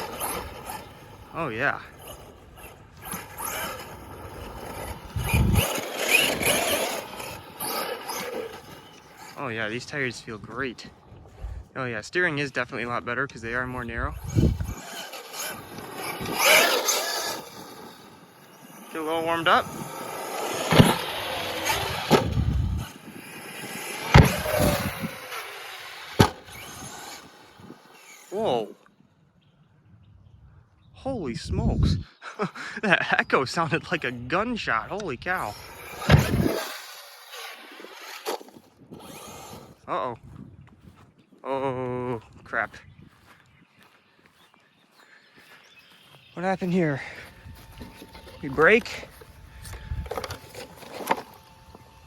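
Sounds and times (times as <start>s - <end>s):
rc truck motor whine: 0.0s - 11.7s, 13.4s - 29.0s, 33.8s - 39.9s, 46.5s - 52.0s
tire noise: 0.0s - 29.5s, 32.9s - 43.9s, 45.8s - 52.0s.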